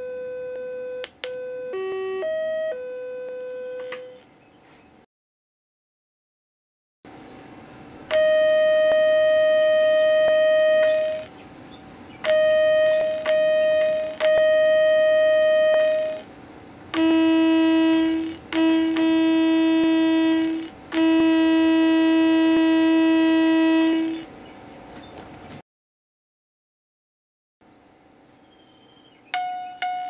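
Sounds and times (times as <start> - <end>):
high synthesized train horn toots: 17.0 - 24.3
low synthesized train horn blasts: 17.0 - 24.3.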